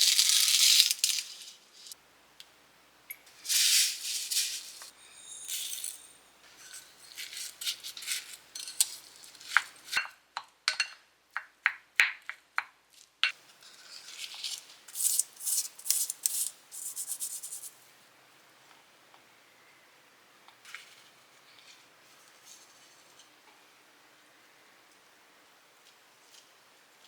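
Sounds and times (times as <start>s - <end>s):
crinkly rustling: 0.0s - 2.0s, 3.4s - 5.0s.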